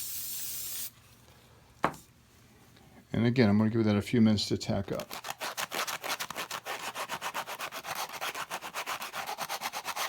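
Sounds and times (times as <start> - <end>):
sandpaper rubbing wood: 5.1 - 10.0.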